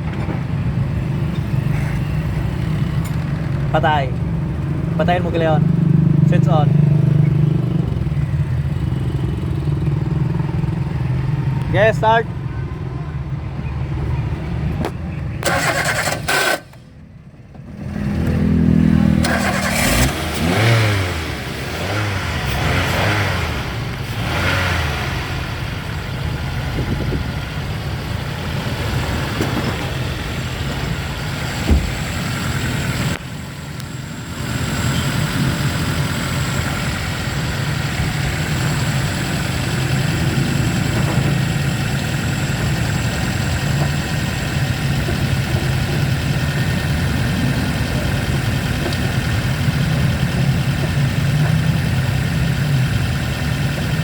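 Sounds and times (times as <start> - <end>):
car engine starting and revving: 13.6 - 16.9, 17.6 - 54.0.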